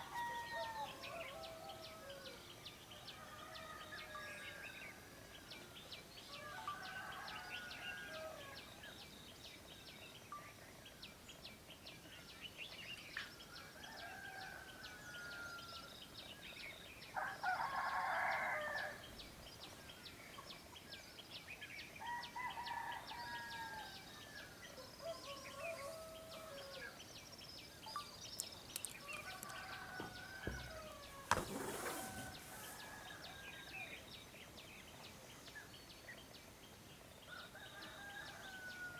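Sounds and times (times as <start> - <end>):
songbirds chirping: 0.0 - 38.9
rooster crowing: 29.0 - 31.4.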